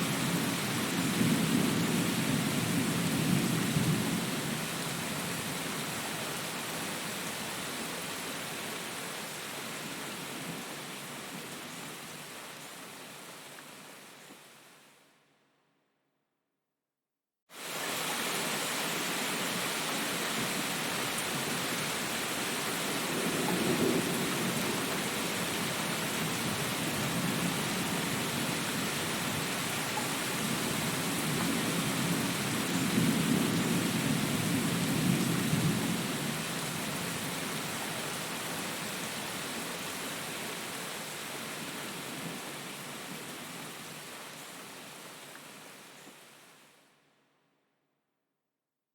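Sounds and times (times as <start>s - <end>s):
steady rain hiss: 0.0s - 15.4s, 17.5s - 47.3s.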